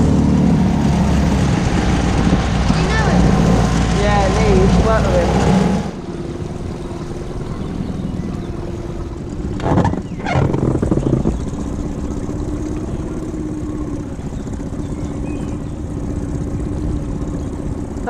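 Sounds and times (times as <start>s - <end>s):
outboard motor running: 0.0s - 18.0s.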